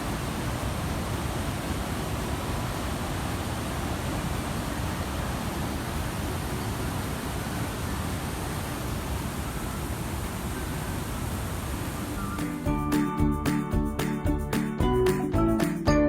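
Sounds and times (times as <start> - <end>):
waterfall and rapids rushing: 0.0 - 12.7.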